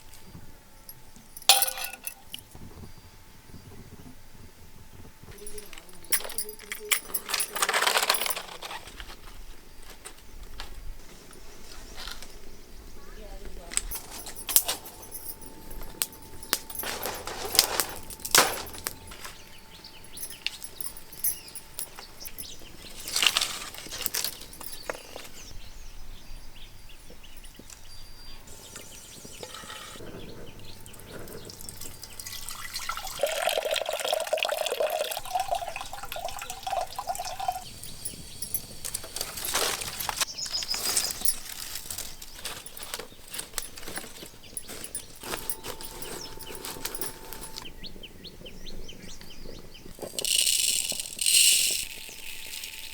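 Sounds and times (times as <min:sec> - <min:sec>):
metal vessels clinking: 0:00.9 - 0:02.6, 0:05.3 - 0:09.2, 0:13.8 - 0:25.5, 0:28.4 - 0:47.8, 0:49.9 - 0:52.9
water pouring and splashing in pot: 0:31.5 - 0:38.4.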